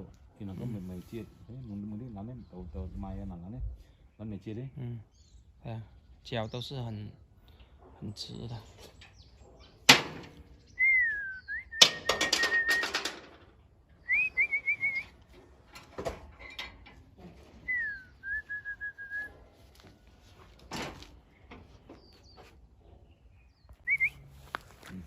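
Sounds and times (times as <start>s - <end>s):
person whistling: 10.8s - 12.9s, 14.1s - 15.1s, 17.7s - 19.3s, 23.9s - 24.2s.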